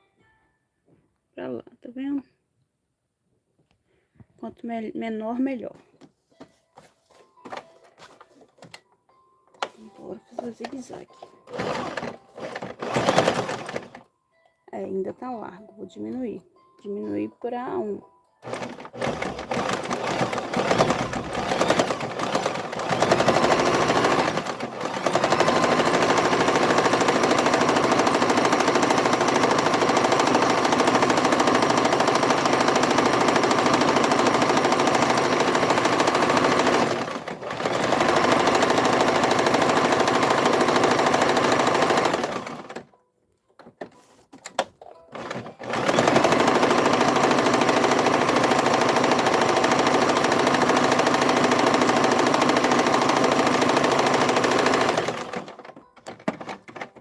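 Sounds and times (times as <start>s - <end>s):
sewing machine stitching: 9.7s - 14.0s, 18.4s - 42.9s, 44.6s - 57.0s.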